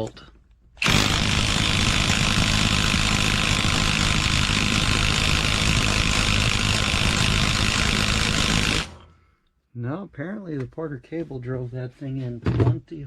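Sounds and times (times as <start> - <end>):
impact wrench hammering: 0.8 - 9.1.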